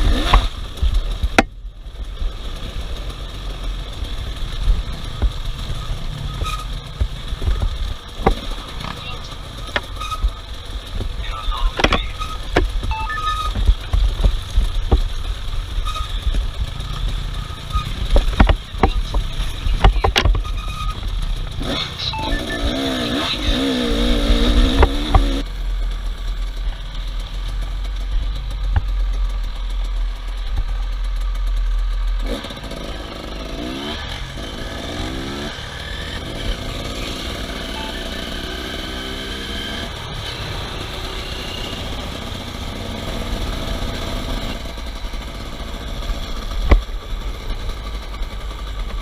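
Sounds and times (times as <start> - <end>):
off-road vehicle engine revving: 0.0 - 49.0
knocks over rough ground: 10.9 - 15.4, 18.0 - 20.5.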